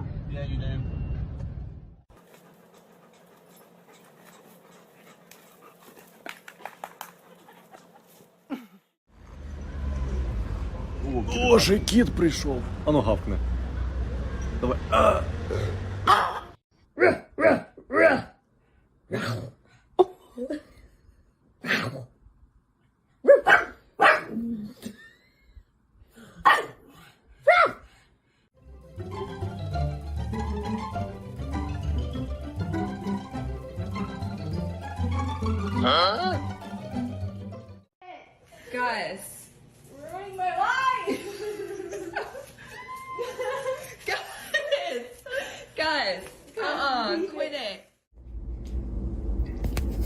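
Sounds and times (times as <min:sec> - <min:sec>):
dog panting: 0:02.1 - 0:08.4
dog barking: 0:23.2 - 0:24.4, 0:26.4 - 0:26.8, 0:27.4 - 0:27.8
low rumble: 0:48.2 - 0:50.0.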